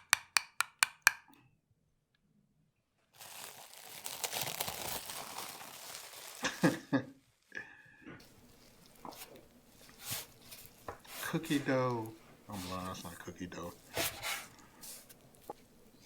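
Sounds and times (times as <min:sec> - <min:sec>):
packaging crinkling: 0:03.2 - 0:06.8, 0:08.2 - 0:16.0.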